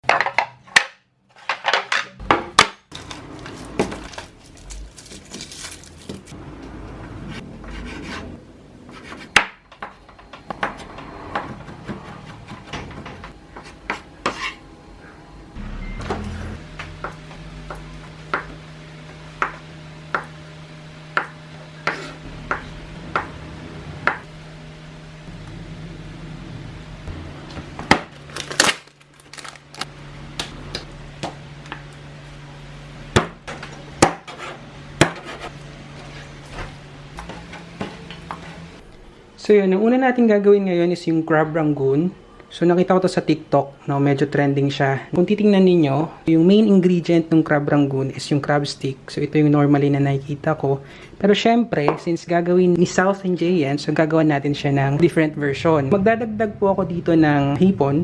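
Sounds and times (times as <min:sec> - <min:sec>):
low steady hum: 0:02.2 - 0:58.0
knife chopping on wooden board: 0:17.0 - 0:18.6, 0:19.4 - 0:20.4, 0:21.1 - 0:23.3, 0:24.0 - 0:24.2, 0:34.0 - 0:35.5.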